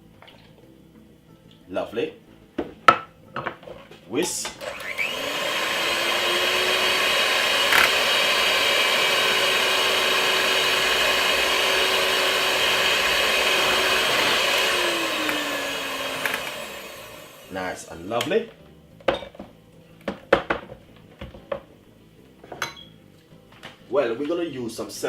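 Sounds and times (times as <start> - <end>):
electric whisk whining: 4.6 - 17.9.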